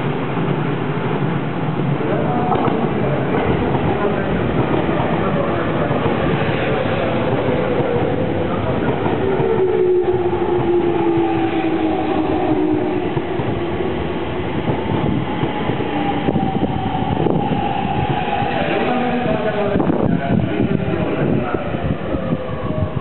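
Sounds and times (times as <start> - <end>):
train wheels rumbling on rails: 0.0 - 23.0
train traction motor whine: 7.2 - 13.8.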